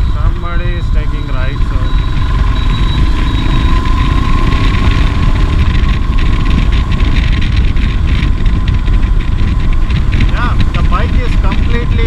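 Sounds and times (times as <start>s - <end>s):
steady high tone: 0.0s - 4.6s
motorcycle engine running: 0.0s - 12.0s
wind buffeting microphone: 0.0s - 12.0s.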